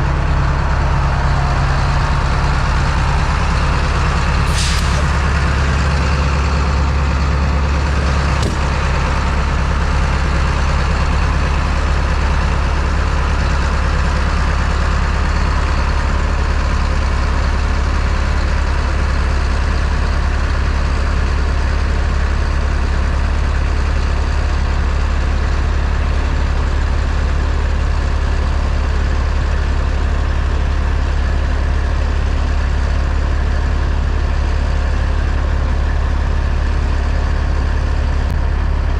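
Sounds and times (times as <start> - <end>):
truck engine drone: 0.0 - 38.9
road noise hiss: 1.3 - 12.1.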